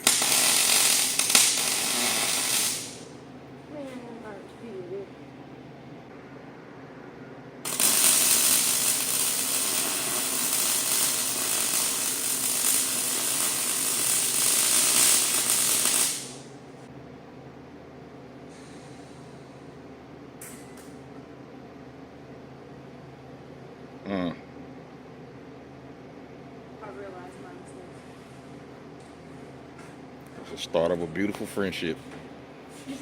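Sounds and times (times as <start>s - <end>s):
welding arc crackling: 0.0s - 3.2s, 7.6s - 16.5s.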